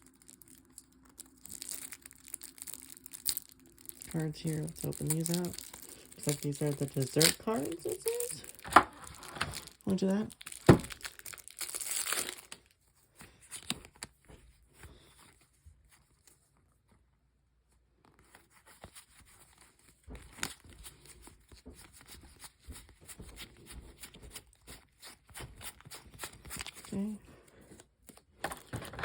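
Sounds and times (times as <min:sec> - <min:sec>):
plastic wrap crinkling and tearing: 0:00.0 - 0:16.4, 0:18.1 - 0:27.2.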